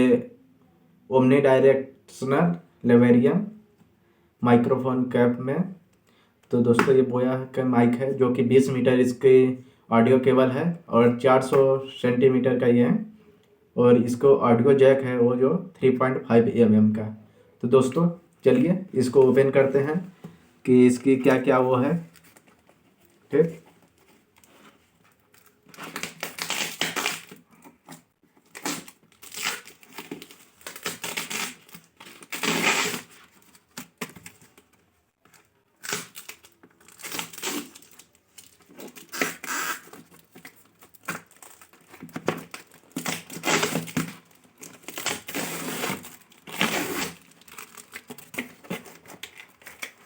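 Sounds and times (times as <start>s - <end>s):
packaging tearing and crinkling: 23.8s - 50.0s.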